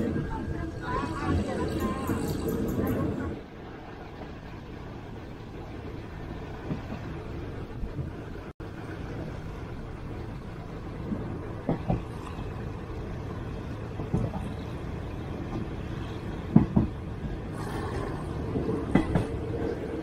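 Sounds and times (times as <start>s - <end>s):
train rumbling: 0.0s - 20.0s.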